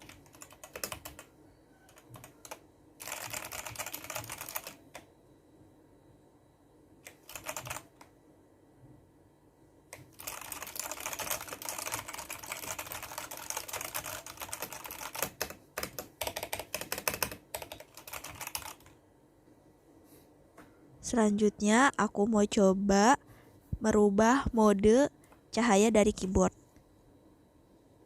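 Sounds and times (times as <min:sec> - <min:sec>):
mechanical keyboard typing: 0:00.0 - 0:05.1, 0:07.0 - 0:08.1, 0:09.9 - 0:19.0.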